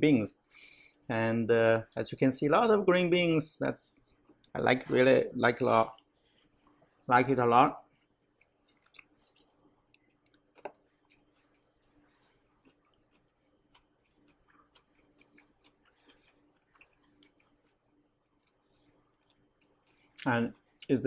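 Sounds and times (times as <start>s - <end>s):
person chewing crisp food: 5.9s - 7.0s, 7.8s - 20.9s.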